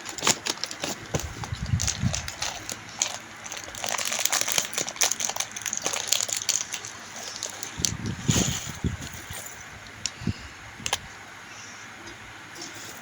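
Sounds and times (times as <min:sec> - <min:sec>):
packaging rustling and crinkling: 0:00.0 - 0:09.7.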